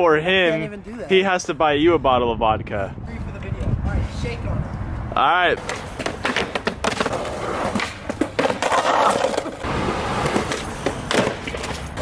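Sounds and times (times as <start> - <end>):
skateboard clacking on ground: 5.6 - 12.0
skateboard rolling: 5.6 - 12.0.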